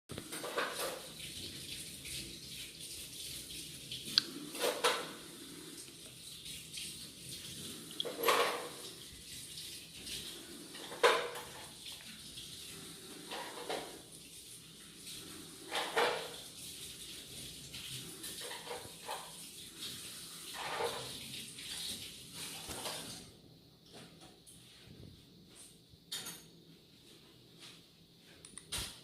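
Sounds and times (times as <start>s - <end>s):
steady hiss: 0.2s - 23.7s.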